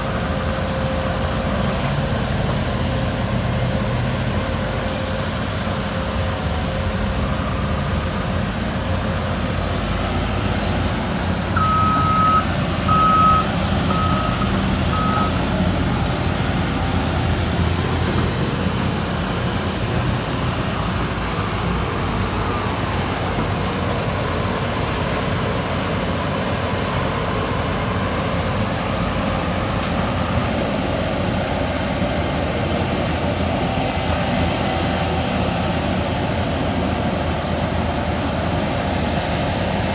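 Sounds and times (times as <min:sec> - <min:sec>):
heavy diesel engines running: 0:00.0 - 0:39.9
reversing alarm beeps: 0:11.6 - 0:15.5.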